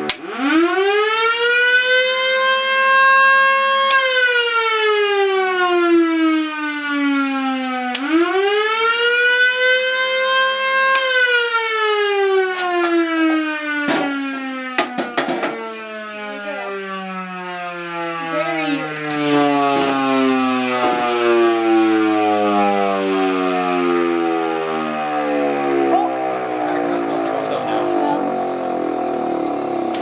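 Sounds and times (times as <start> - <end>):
siren winding down: 0.0 - 30.0
sharp knocks: 12.6 - 15.7.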